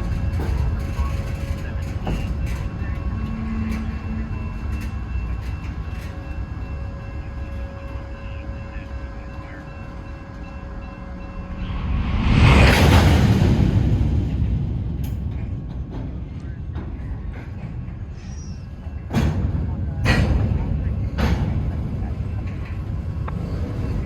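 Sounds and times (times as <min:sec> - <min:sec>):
train cars rumbling past: 0:00.0 - 0:24.0
loud rushing noise: 0:11.3 - 0:16.3.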